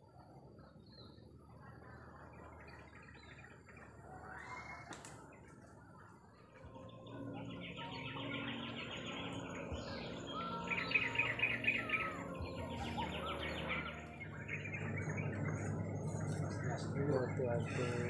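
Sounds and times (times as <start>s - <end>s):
birds trilling: 0.0s - 18.0s
low steady hum: 6.6s - 18.0s.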